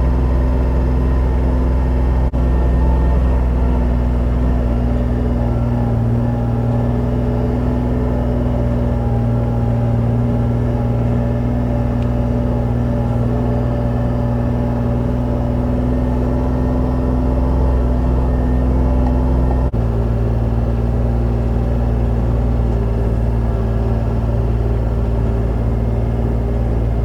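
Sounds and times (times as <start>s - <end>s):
vehicle engine running: 0.0s - 27.0s.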